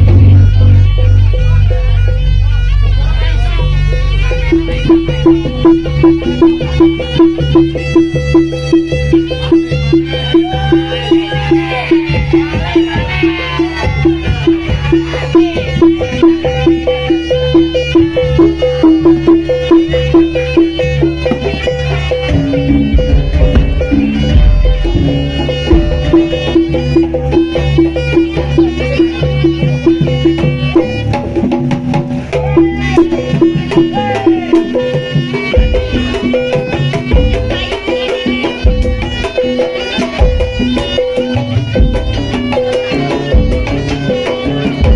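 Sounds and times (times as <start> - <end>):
tuned gongs: 0.0 - 38.3
drums: 0.0 - 44.9
wavering bending melody: 0.0 - 44.9
struck metallic note repeating: 4.4 - 31.2, 32.4 - 36.3.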